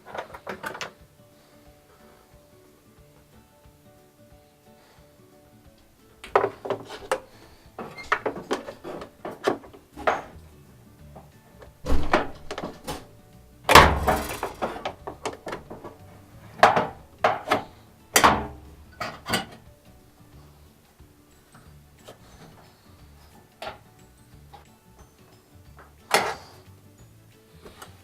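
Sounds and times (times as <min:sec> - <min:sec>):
faint background music: 0:00.0 - 0:28.0
wrench and metal parts clanking: 0:06.3 - 0:10.4, 0:13.7 - 0:19.7, 0:25.7 - 0:26.6.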